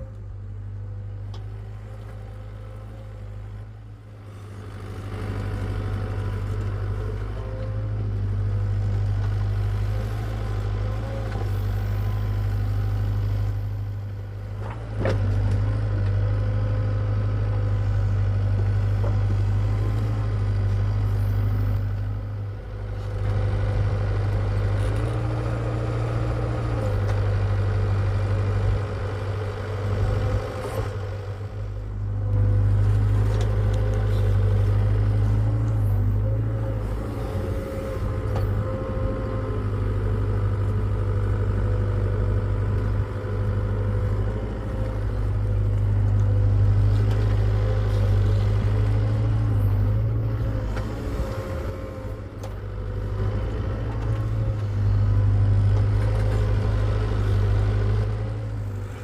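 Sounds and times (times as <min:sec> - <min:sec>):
excavator diesel engine running: 0:00.0 - 0:59.0.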